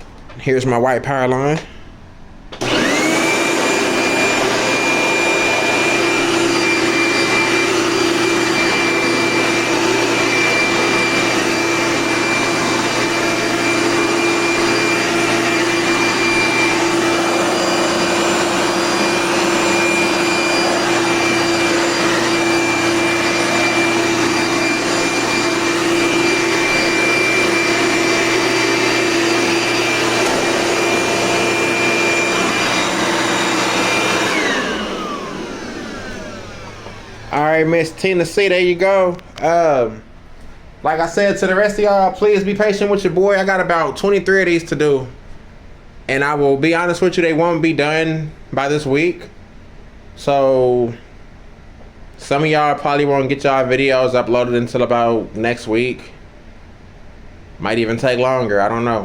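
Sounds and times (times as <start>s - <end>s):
vacuum cleaner motor whine: 2.5s - 39.0s.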